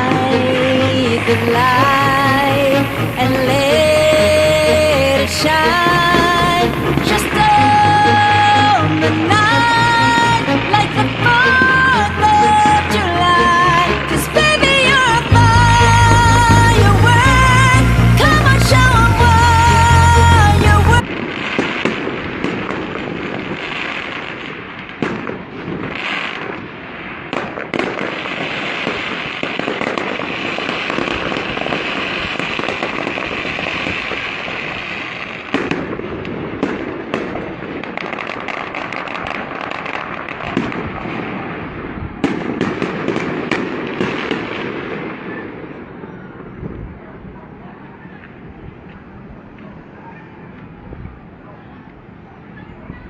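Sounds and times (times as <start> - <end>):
fireworks crackling and banging: 0.0 - 52.0.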